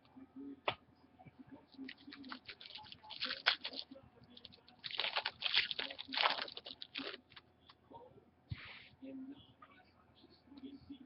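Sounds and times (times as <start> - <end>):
cards crinkling and rustling: 1.8 - 7.4.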